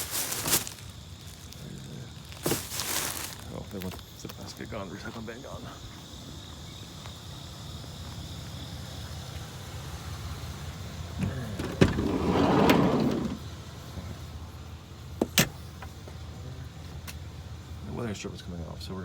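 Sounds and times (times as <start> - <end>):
vehicle engine idling: 3.4 - 12.2, 13.0 - 19.0
vehicle door shutting: 11.1 - 13.4, 15.2 - 15.6.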